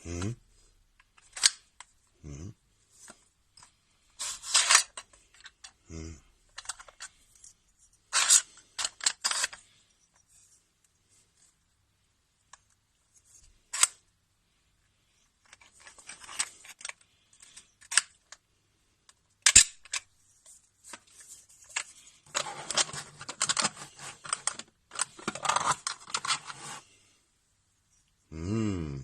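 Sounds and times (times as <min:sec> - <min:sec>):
plastic puzzle box clicking: 0:21.7 - 0:26.5.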